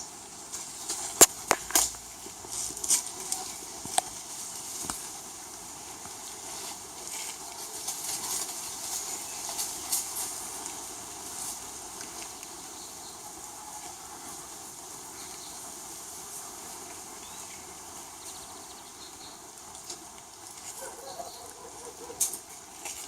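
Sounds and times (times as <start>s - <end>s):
background hiss: 0.0s - 23.0s
faint bird chirps: 20.8s - 22.1s.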